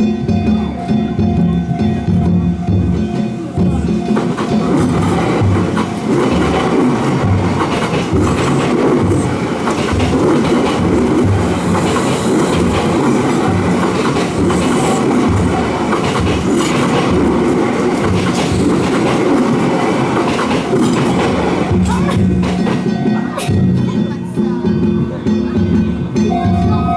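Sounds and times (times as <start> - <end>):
train wheels clattering over rail joints: 0.0 - 24.0.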